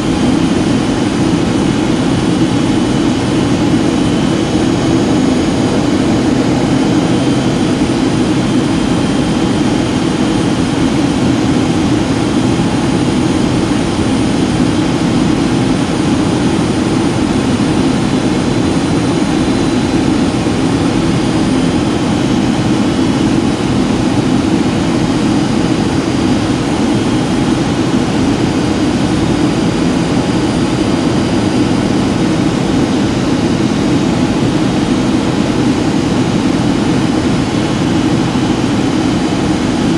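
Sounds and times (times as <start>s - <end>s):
jet engine cabin drone: 0.0s - 39.9s.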